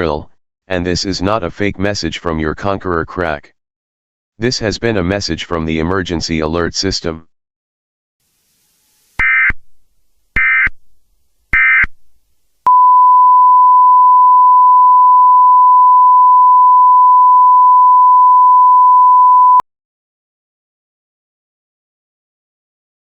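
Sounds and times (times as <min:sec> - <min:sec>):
steady pure beep tone: 0:12.7 - 0:19.6.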